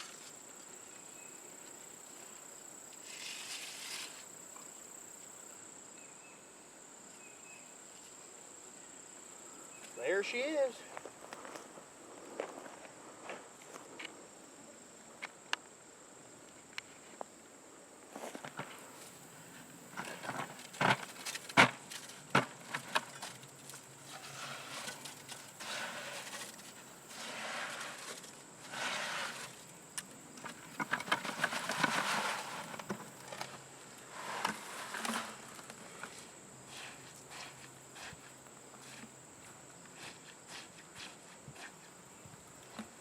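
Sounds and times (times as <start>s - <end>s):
tools scraping wet concrete: 24.1s - 29.7s, 30.8s - 33.5s, 34.1s - 39.2s, 39.9s - 41.9s.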